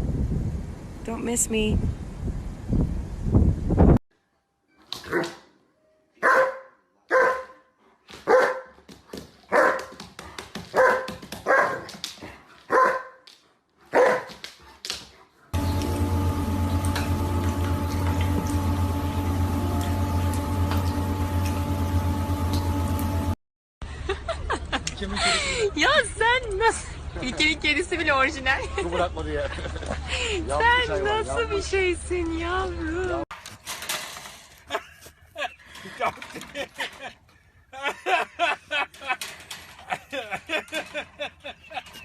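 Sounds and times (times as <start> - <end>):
dog barking: 6.2 - 8.8, 9.5 - 9.9, 10.7 - 11.9, 12.7 - 13.2, 13.9 - 14.4
steady hum with hiss: 15.6 - 23.4.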